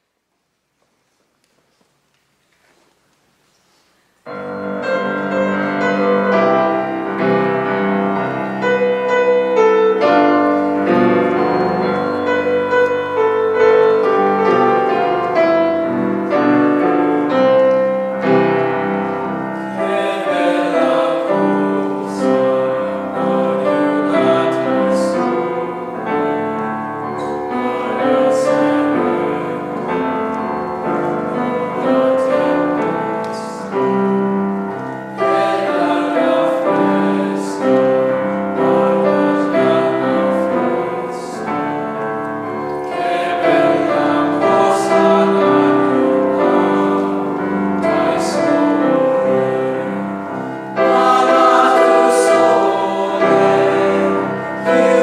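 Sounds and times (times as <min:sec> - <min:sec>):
piano accompaniment: 0:04.2 - 0:55.0
choir singing: 0:04.3 - 0:55.0.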